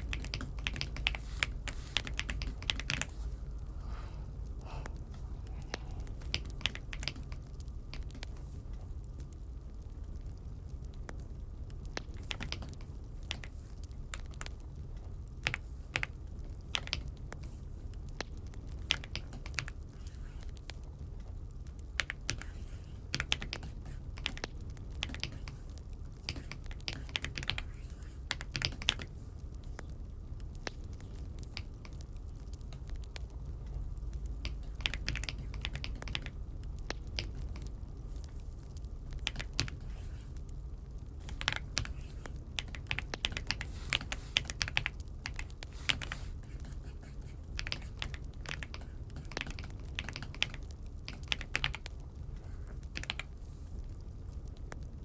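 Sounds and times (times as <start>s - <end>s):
mechanical keyboard typing: 0.0s - 3.2s, 6.1s - 8.4s, 11.9s - 14.6s, 16.7s - 17.2s, 18.8s - 19.8s, 22.0s - 29.1s, 34.4s - 37.7s, 39.1s - 40.2s, 41.2s - 52.0s, 52.9s - 53.3s
low steady hum: 0.0s - 55.0s.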